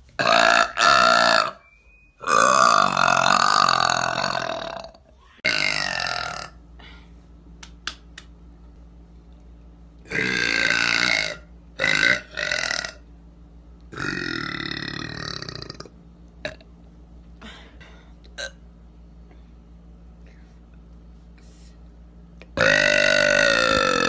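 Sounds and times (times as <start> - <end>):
woman burping loudly: 0.2 - 1.6, 2.2 - 6.6, 10.1 - 13.0, 14.0 - 16.6, 22.6 - 24.0.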